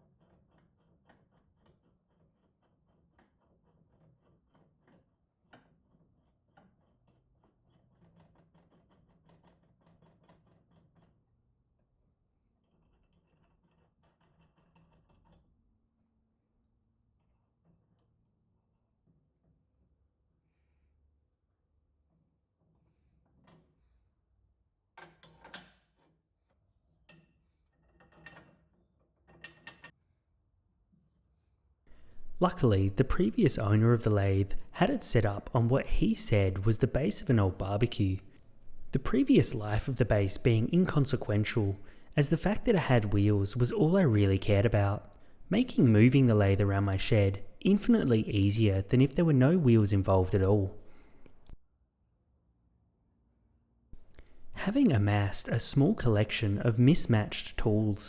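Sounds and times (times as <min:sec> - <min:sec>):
faint low hum: 0:31.9 - 0:51.6.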